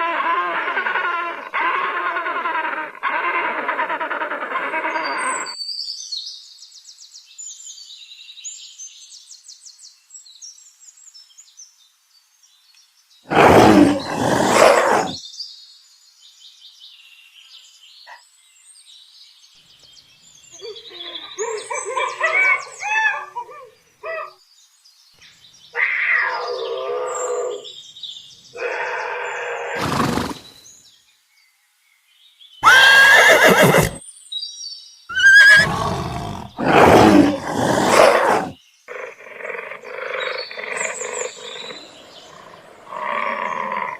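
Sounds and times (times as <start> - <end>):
loud animal calls and cries: 0.0 - 5.6, 13.3 - 15.2, 25.7 - 27.7, 28.5 - 30.5, 32.6 - 34.0, 35.1 - 43.9.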